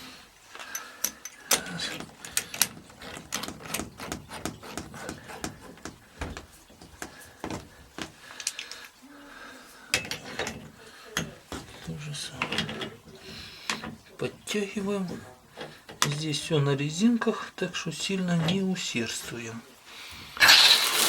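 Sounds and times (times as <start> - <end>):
metal plumbing fittings clicking: 0.6 - 9.0, 9.9 - 16.5.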